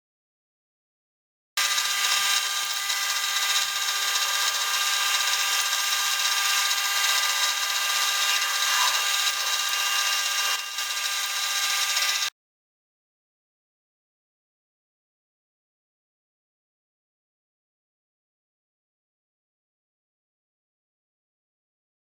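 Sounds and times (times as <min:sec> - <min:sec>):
high-pitched power tool whine: 0:01.6 - 0:12.3.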